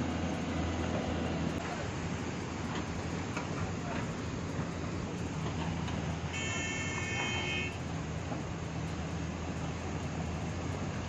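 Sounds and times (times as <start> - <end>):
excavator engine hum: 0.0 - 11.0
horn sounding: 6.3 - 7.8.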